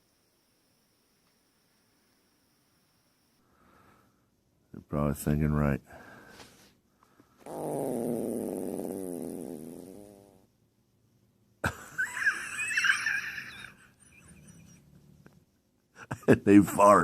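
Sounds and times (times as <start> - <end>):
animal farting: 7.4 - 10.4.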